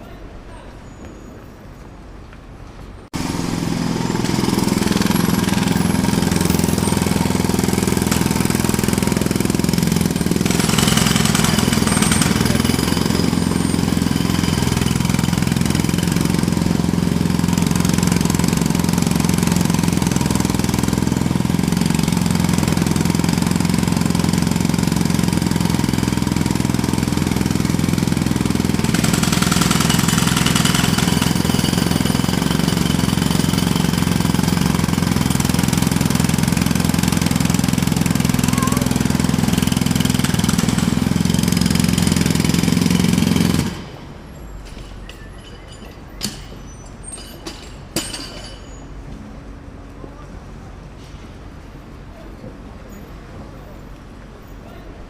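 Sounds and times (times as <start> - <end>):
jackhammer hammering: 3.1 - 48.8.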